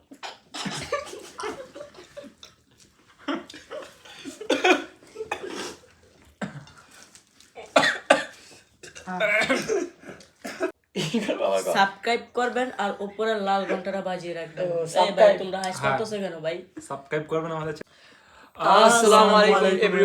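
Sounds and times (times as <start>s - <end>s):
people coughing: 0.1s - 2.3s, 3.3s - 5.8s, 7.6s - 11.2s
people laughing: 0.6s - 2.5s.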